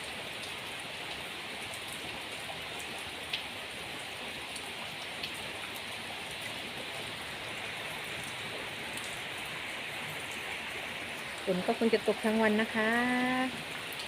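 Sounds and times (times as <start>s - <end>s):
steady rain falling: 0.0s - 14.0s.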